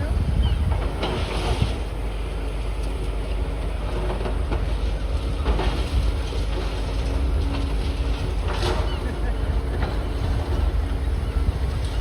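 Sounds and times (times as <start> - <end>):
excavator engine drone: 0.0 - 12.0
rubble clanking: 3.7 - 12.0.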